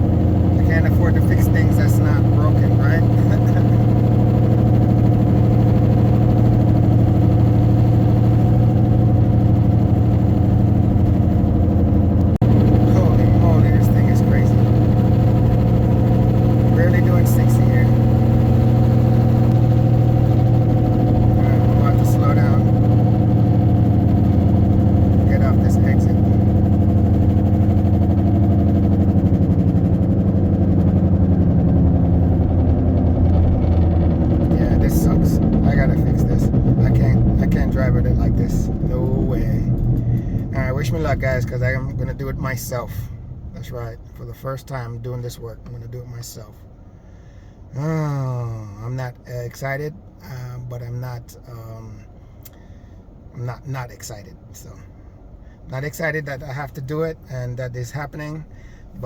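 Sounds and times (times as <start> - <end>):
loud low drone of wheel noise: 0.0 - 46.0.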